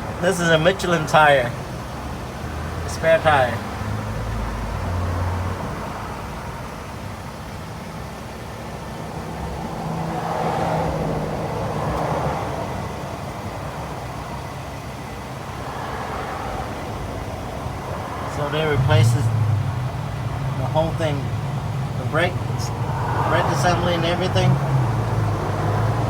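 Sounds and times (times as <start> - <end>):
road traffic noise: 0.0 - 26.0
vehicle passing: 9.1 - 14.4, 15.2 - 26.0.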